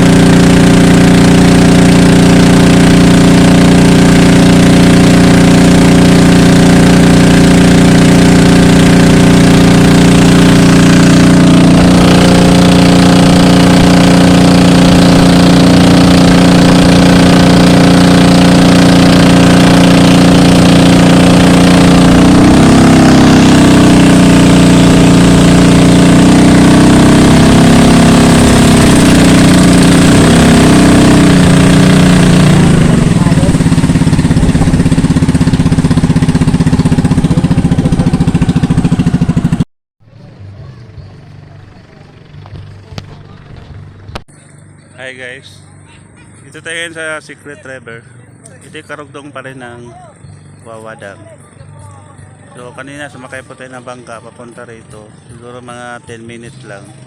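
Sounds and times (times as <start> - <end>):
boat engine running: 0.0 - 57.0.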